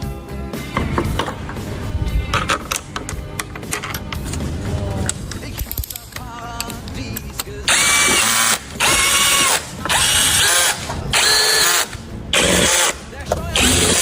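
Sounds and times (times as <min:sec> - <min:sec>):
power tool whining: 0:07.7 - 0:14.0.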